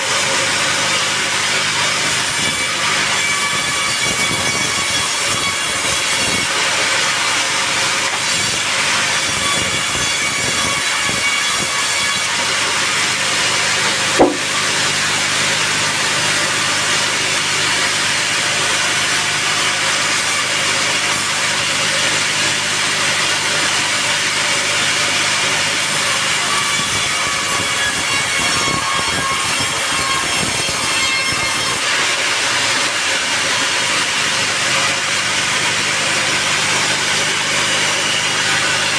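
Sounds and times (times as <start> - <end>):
saw cutting a log: 0.0 - 38.9
saw motor humming: 12.0 - 26.6, 31.8 - 38.9
sharp knock: 14.2 - 14.6.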